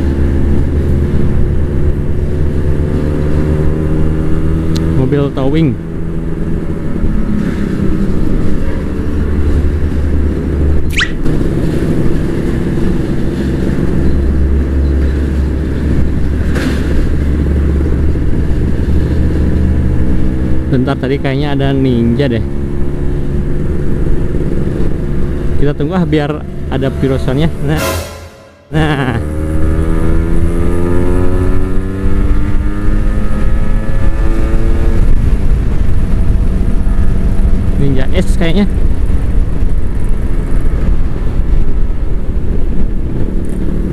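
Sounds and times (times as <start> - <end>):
road noise: 0.0 - 43.9
short rising chirp: 10.9 - 11.2
motorcycle engine accelerating: 28.8 - 37.8.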